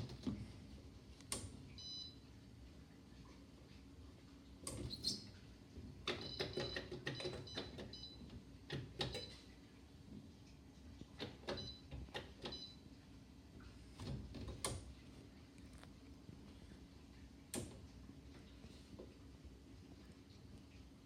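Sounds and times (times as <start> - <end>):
washing machine clicks and knocks: 0.0 - 0.6, 5.8 - 9.4, 11.1 - 12.8, 14.0 - 15.0
low steady hum: 0.0 - 6.8, 7.4 - 21.0.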